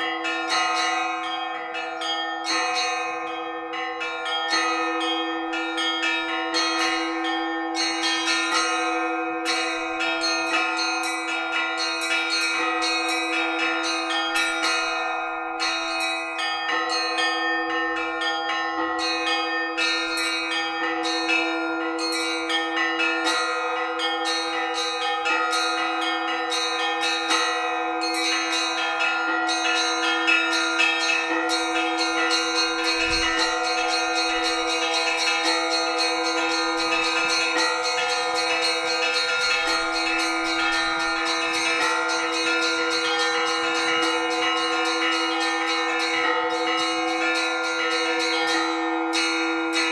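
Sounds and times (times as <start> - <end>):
deep bells humming: 0.0 - 49.9
small church bells ringing: 0.0 - 49.9.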